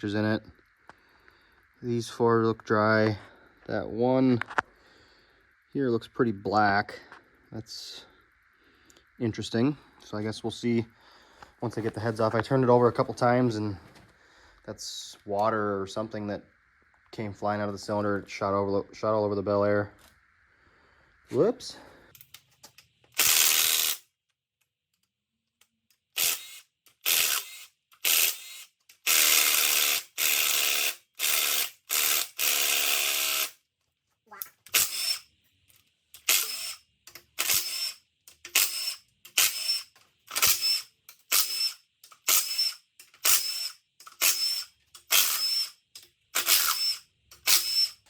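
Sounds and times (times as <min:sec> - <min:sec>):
power tool loosening bolts: 0:22.2 - 0:24.0, 0:26.1 - 0:33.6, 0:34.6 - 0:35.2, 0:36.1 - 0:48.0
ratchet clicking strokes: 0:22.2 - 0:24.1, 0:26.0 - 0:33.6, 0:34.7 - 0:35.3, 0:36.1 - 0:48.0.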